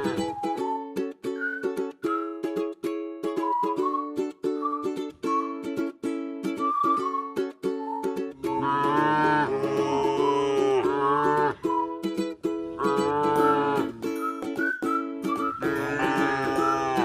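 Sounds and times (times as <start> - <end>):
plucked-string background music: 0.0 - 17.0
cows mooing: 8.5 - 11.6, 12.8 - 14.0, 15.6 - 17.0.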